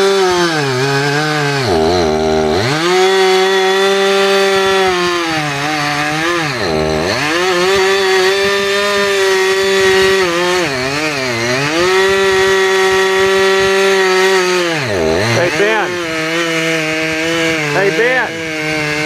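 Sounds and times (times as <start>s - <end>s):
chainsaw cutting wood: 0.0s - 19.0s.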